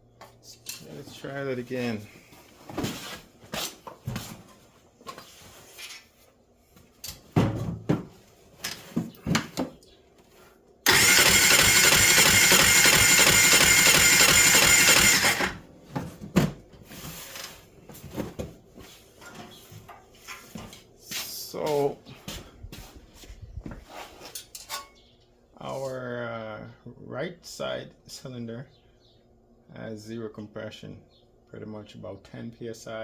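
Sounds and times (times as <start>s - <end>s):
clicks and knocks of tools: 7.0s - 7.2s
engine cranking without firing: 10.8s - 15.6s.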